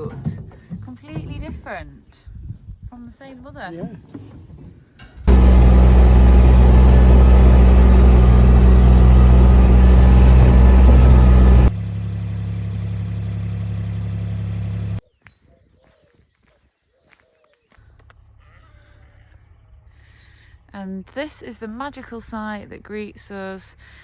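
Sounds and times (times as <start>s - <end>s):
engine humming: 5.3s - 15.0s.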